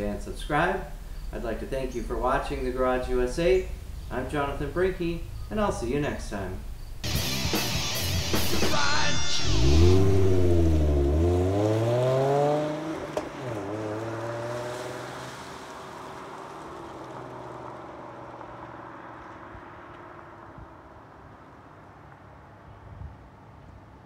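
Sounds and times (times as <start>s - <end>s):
car engine accelerating: 7.0s - 21.3s.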